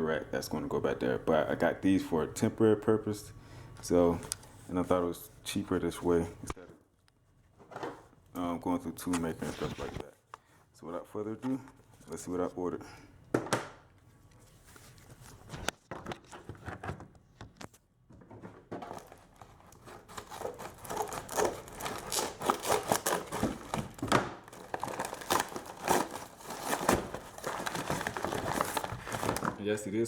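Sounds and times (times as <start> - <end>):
packaging clicks and handling: 18.8 - 29.6
packaging crinkling and tearing: 18.9 - 29.6.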